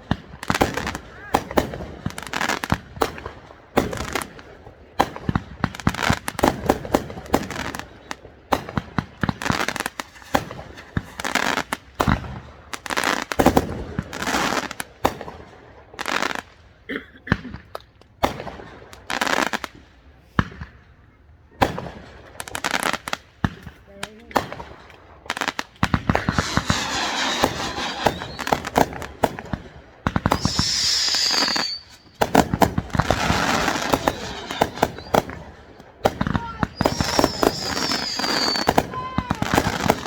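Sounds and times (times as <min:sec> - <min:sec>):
fireworks bangs and crackling: 0:00.0 - 0:20.9, 0:21.6 - 0:40.0.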